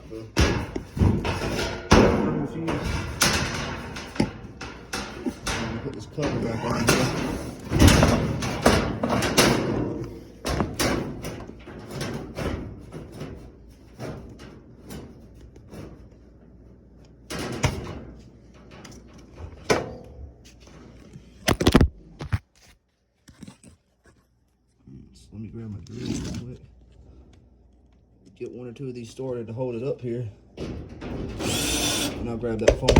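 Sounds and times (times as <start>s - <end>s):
sheet metal knocks and rattles: 0.0s - 16.3s, 17.2s - 21.0s, 30.5s - 32.9s.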